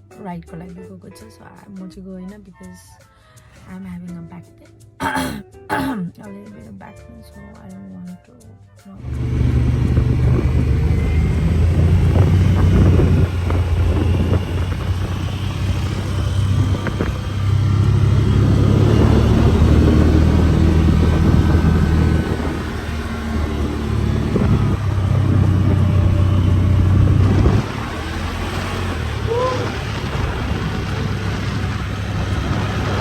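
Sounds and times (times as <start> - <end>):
atv engines running: 9.0 - 33.0.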